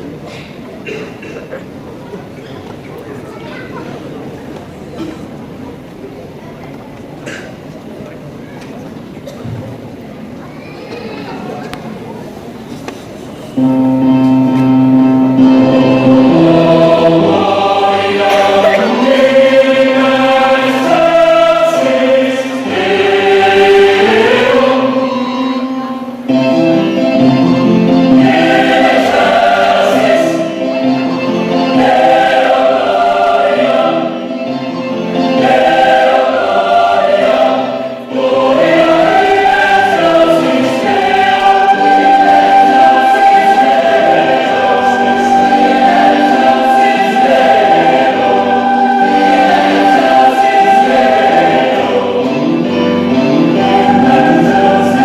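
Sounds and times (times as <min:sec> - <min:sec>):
choir singing in parts: 0:13.6 - 0:55.0.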